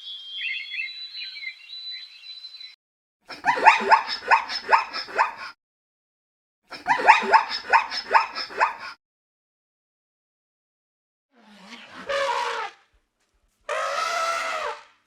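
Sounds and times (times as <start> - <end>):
animal giving short pitched calls: 7.0 - 9.0.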